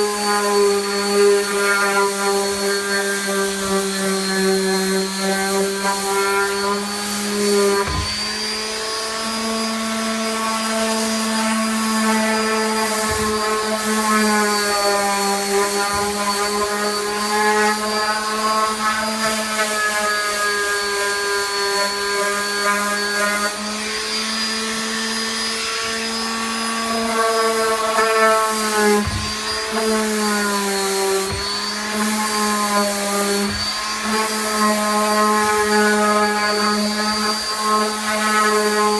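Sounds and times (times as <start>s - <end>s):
electric power tool motor running: 0.0s - 38.9s.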